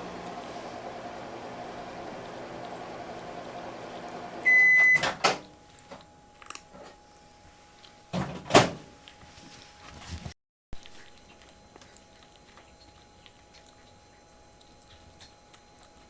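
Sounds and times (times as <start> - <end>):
microwave oven humming: 0.0 - 9.8, 10.8 - 16.0
microwave beep: 3.3 - 5.4.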